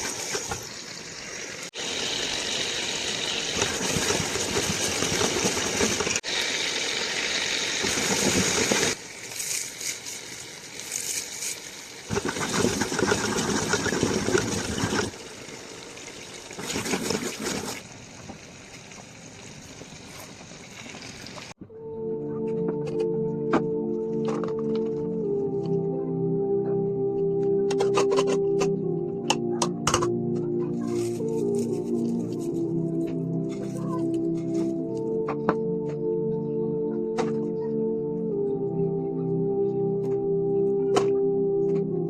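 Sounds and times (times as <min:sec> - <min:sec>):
water running and splashing: 0:00.0 - 0:21.6.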